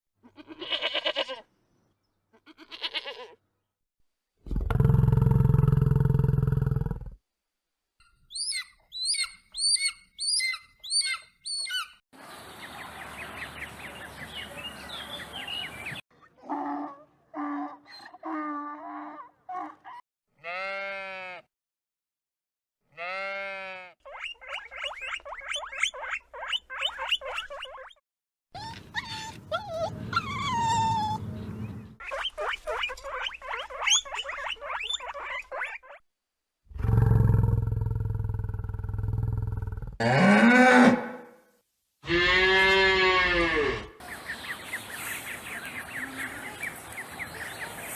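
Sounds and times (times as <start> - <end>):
bird chirps and song: 8.0 - 16.0, 31.2 - 35.6, 44.0 - 47.9
low-pitched animal calls: 28.6 - 31.3.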